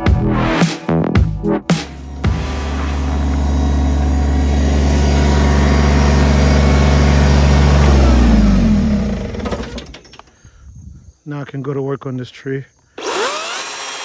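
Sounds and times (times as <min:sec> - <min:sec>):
electric chainsaw motor humming: 0:01.8 - 0:10.2, 0:13.0 - 0:14.0.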